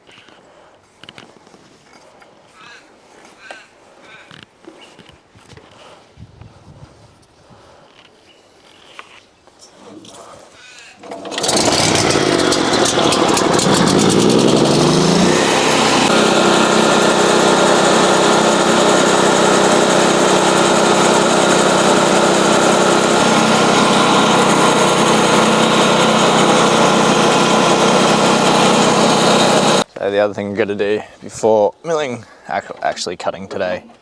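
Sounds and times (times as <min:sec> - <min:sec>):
small petrol engine running: 0:11.0 - 0:29.9.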